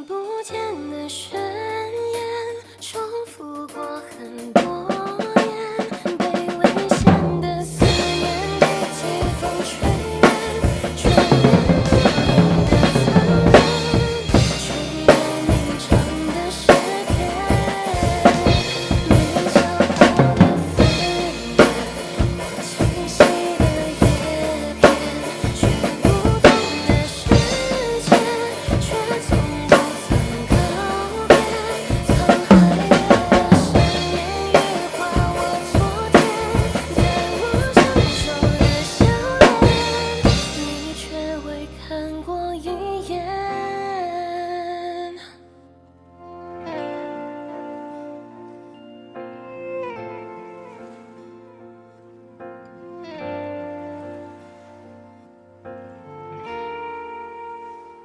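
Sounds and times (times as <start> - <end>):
instrumental backing track: 0.0 - 44.7, 45.8 - 58.0
snare drum and rimshots: 7.8 - 40.8.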